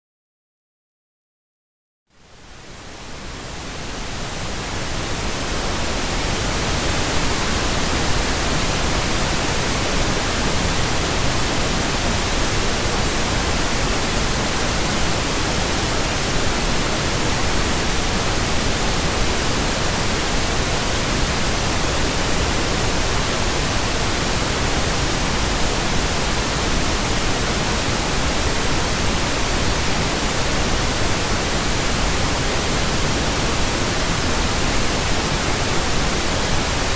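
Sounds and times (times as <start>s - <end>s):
pink noise hiss: 2.1s - 36.9s.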